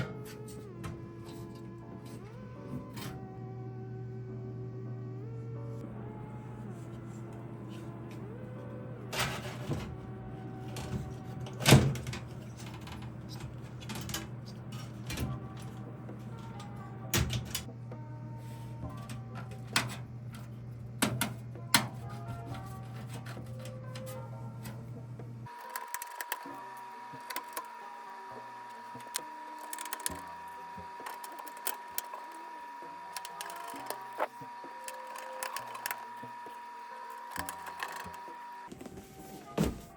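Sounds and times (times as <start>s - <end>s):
hard parts knocking and clicking: 27.2s - 27.7s, 28.9s - 32.4s, 33.1s - 38.2s.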